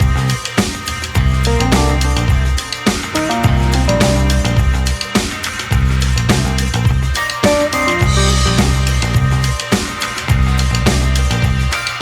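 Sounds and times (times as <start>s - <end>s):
bass line: 0.0s - 0.4s, 1.2s - 2.7s, 3.4s - 5.1s, 5.8s - 7.2s, 8.0s - 9.6s, 10.3s - 11.7s
drum hits: 0.0s - 11.8s
melody: 1.5s - 5.2s, 7.2s - 9.6s.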